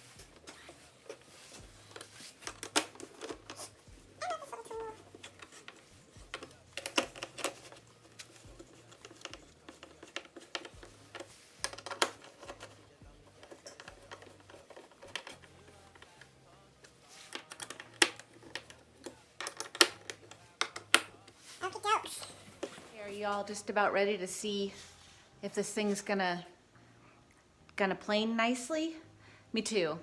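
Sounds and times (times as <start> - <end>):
hand tools and metal parts clicking: 0.0 - 23.4.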